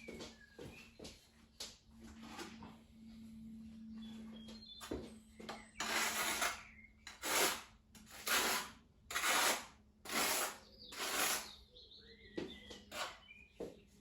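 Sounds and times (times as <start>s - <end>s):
trowel scraping tile adhesive: 5.8s - 11.5s, 12.9s - 13.2s.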